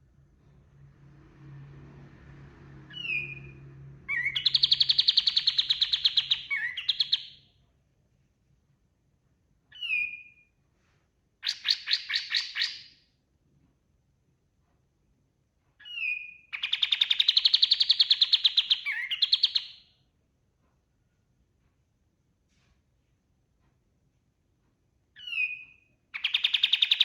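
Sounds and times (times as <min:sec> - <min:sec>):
faint low hum: 0:00.0 - 0:11.5.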